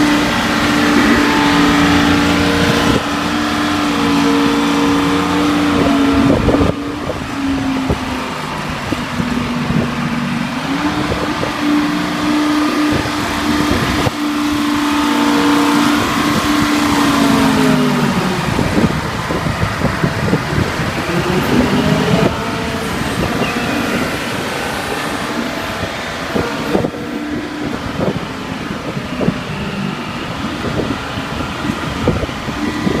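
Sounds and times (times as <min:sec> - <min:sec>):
excavator engine working: 0:00.0 - 0:33.0.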